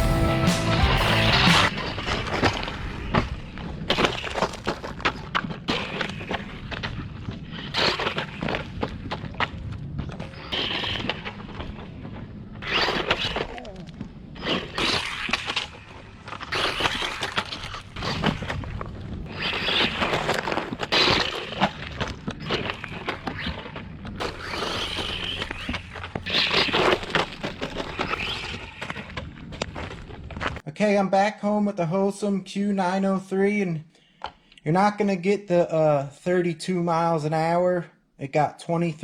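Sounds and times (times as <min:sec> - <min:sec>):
rc truck clattering over rocks: 0:10.6 - 0:30.6.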